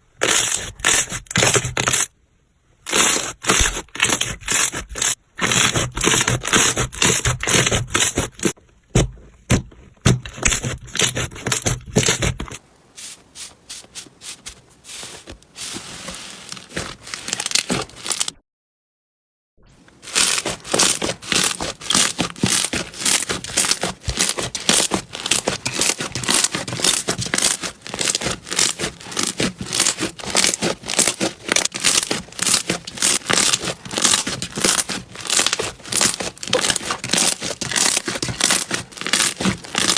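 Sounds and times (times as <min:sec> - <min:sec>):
slime crackling and popping: 0:17.2 - 0:18.4, 0:20.0 - 0:39.9.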